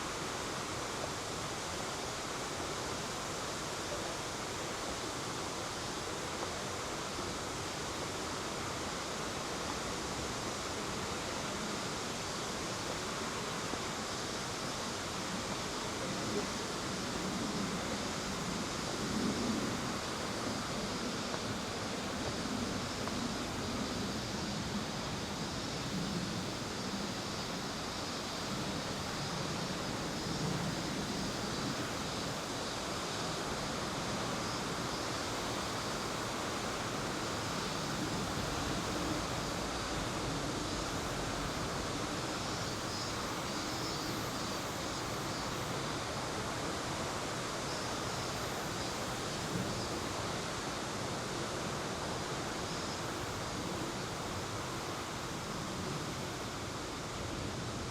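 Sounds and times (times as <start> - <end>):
mountain river rushing: 0.0 - 57.9.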